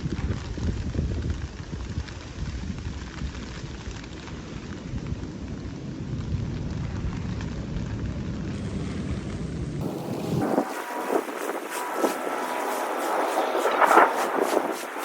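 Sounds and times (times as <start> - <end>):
continuous low rumble: 0.0 - 15.0
rain falling: 9.8 - 15.0.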